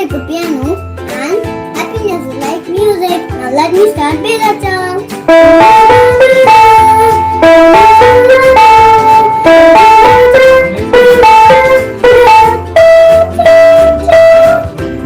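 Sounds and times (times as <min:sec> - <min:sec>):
keyboard melody: 0:05.2 - 0:15.0.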